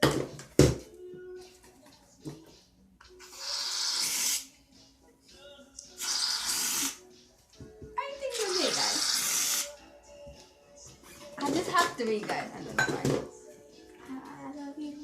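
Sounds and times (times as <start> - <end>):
aerosol can spraying: 3.2 - 4.5, 6.0 - 7.0, 8.4 - 9.7.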